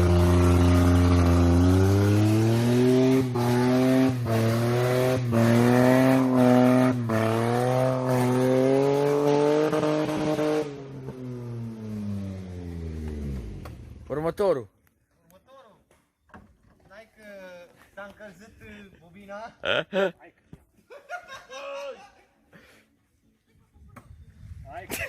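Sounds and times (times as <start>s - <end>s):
car engine revving hard: 0.0s - 13.9s.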